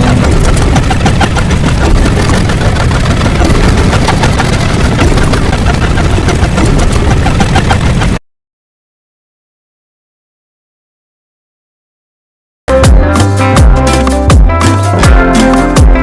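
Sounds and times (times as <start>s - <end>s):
rapid crackling: 0.0s - 8.2s
rumbling engine-like noise: 0.0s - 8.2s.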